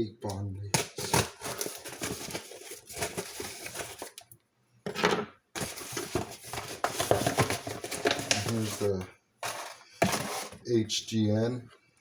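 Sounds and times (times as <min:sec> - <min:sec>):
packing tape crackling: 0:00.8 - 0:04.3, 0:05.6 - 0:10.5
cardboard rustling: 0:01.0 - 0:04.2, 0:05.6 - 0:10.6.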